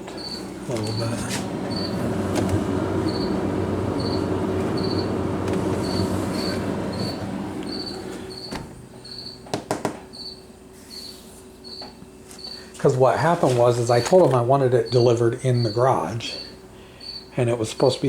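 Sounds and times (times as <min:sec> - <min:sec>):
refrigerator fan humming: 0:00.0 - 0:10.9
cricket chirping: 0:17.0 - 0:17.3.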